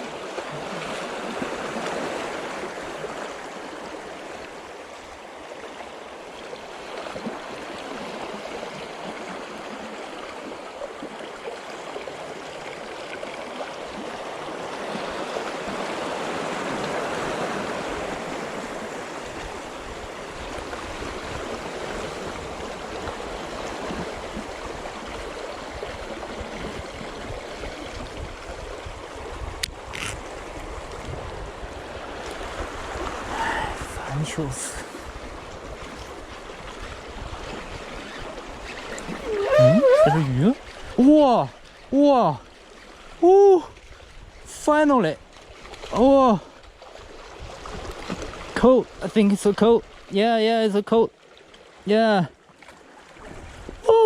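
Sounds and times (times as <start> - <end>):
sea water washing on shore: 0.0 - 28.2.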